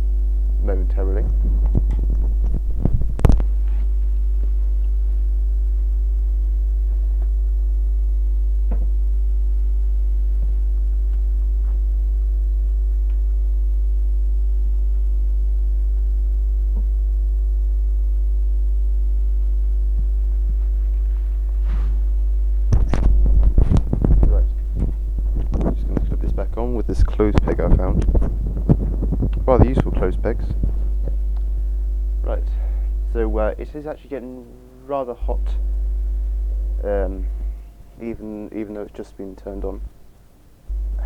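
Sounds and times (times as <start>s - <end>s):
electrical mains hum: 0.0s - 41.0s.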